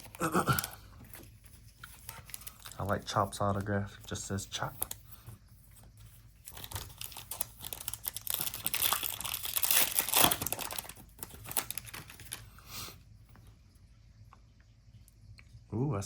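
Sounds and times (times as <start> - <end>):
foil wrapper tearing and crinkling: 0.0 - 0.8, 1.8 - 3.4, 6.4 - 12.5.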